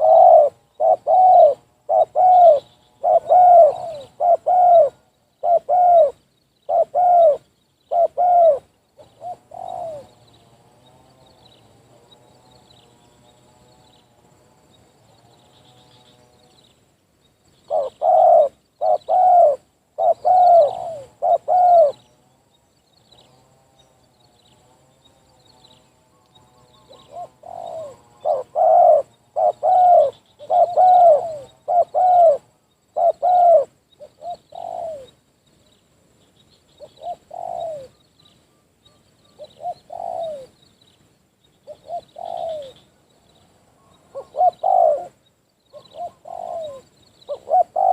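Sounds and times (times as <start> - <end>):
dove cooing: 0.0 - 10.4, 17.7 - 22.2, 26.6 - 35.2, 36.8 - 40.6, 41.7 - 43.0, 43.8 - 47.9.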